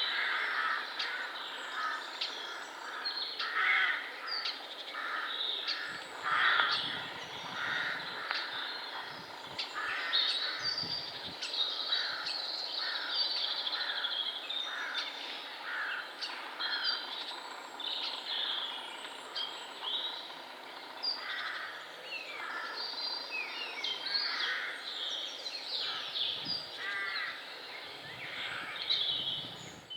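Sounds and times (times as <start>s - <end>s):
songbirds chirping and singing: 0.0s - 29.9s
crow cawing: 0.1s - 2.1s, 2.8s - 4.2s, 4.9s - 10.9s, 11.9s - 13.2s, 14.7s - 17.0s, 21.2s - 21.8s, 22.4s - 22.8s, 24.1s - 24.8s, 25.8s - 26.2s, 26.8s - 27.5s.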